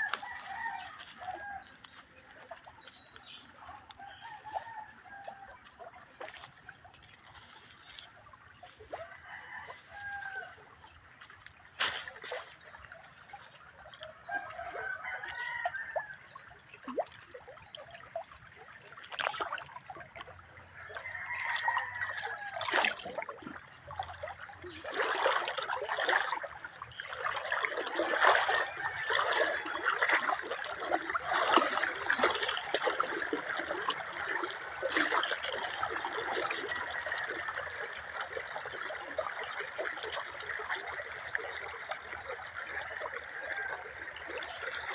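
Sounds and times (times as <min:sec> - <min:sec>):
river trickling over stones: 0:00.0 - 0:44.9
rooster crowing: 0:09.0 - 0:10.6, 0:14.3 - 0:16.2.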